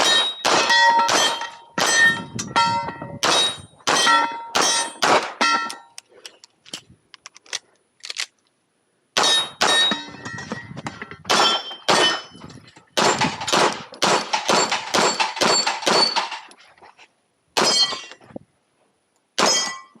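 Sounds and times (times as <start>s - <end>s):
pistol shots: 0.0s - 2.2s, 3.2s - 5.8s, 9.2s - 10.2s, 11.3s - 12.3s, 13.0s - 16.4s
metallic ring of steel targets: 0.0s - 6.0s, 9.2s - 16.5s, 17.6s - 18.2s, 19.4s - 20.0s.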